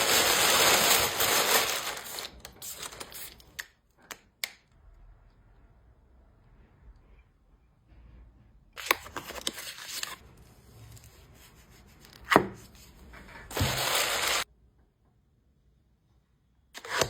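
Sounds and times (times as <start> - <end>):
plastic packaging rustling: 0.0 - 3.6.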